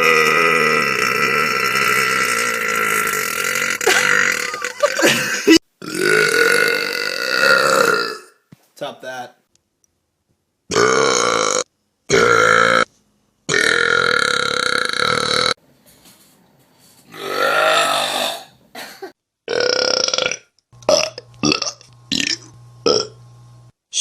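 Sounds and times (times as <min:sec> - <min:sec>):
person burping: 0:00.0 - 0:08.4, 0:10.7 - 0:12.9, 0:13.5 - 0:15.6, 0:17.1 - 0:23.2.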